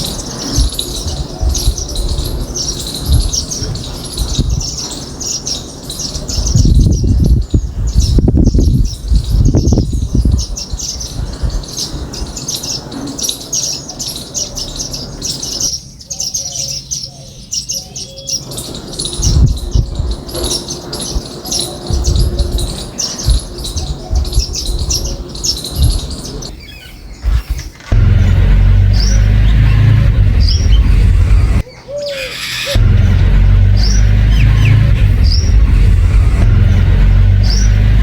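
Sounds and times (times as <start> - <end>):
low thumps and rumbles: 0.0 - 5.3, 6.1 - 12.3, 18.7 - 31.7, 32.4 - 38.0
birds chirping: 0.0 - 38.0.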